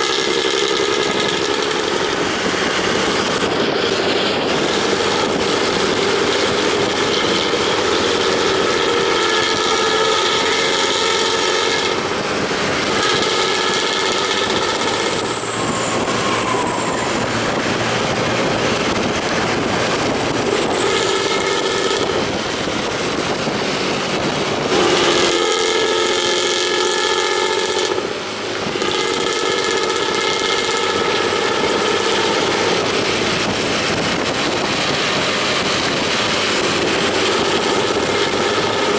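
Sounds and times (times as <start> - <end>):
bus exhaust running loudly: 0.0 - 38.9
road traffic: 0.0 - 38.9
multi-note bus horn chord: 5.1 - 12.2, 12.8 - 14.9, 24.7 - 28.1, 28.7 - 32.8.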